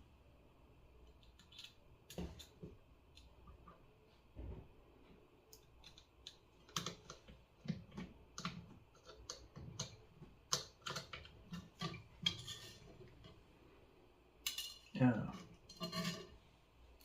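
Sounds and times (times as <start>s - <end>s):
small screws clicking and tapping: 5.5s - 12.5s.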